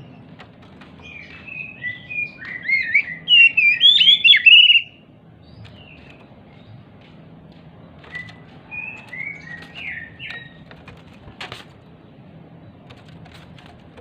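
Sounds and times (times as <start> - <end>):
bird whistling notes: 1.0 - 5.0, 8.1 - 10.6
wing flutters: 7.9 - 12.0, 12.8 - 14.0.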